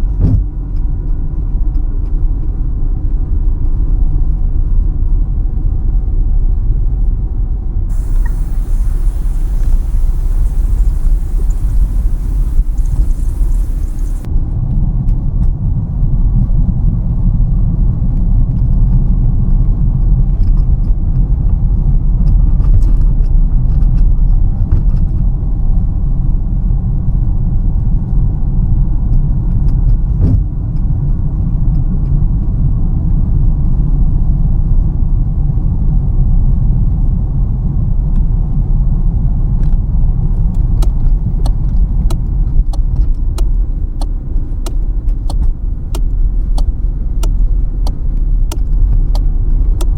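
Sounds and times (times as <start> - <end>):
car engine and tyre road noise: 7.9 - 14.3
faint light clicks: 7.9 - 14.3.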